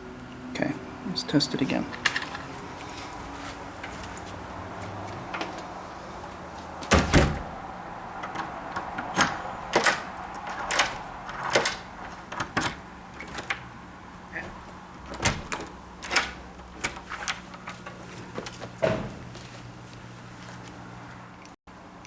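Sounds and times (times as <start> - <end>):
door shutting with a thump: 6.9 - 7.6, 14.4 - 17.4, 18.4 - 19.3
deadbolt metallic clicks: 8.2 - 13.7, 14.4 - 18.0.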